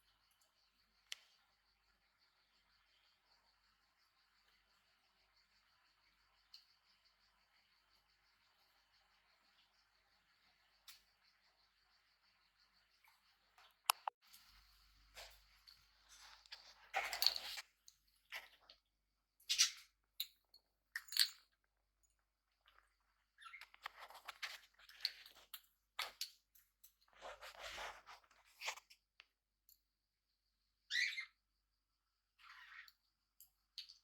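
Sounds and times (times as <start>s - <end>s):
bird chirp: 23.4s - 24.4s, 30.9s - 31.5s.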